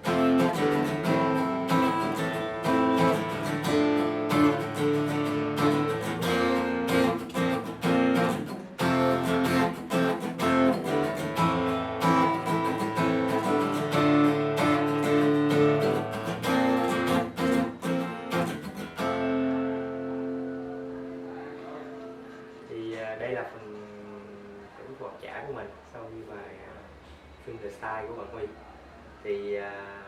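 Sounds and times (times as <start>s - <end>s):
acoustic guitar strumming: 0.0s - 23.3s.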